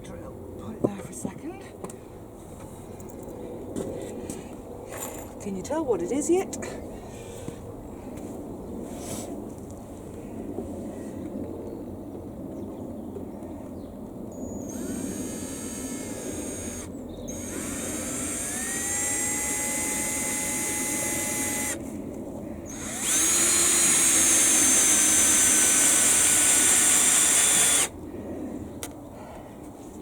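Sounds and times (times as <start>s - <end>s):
power drill drilling into timber: 14.6s - 21.9s, 22.7s - 27.9s.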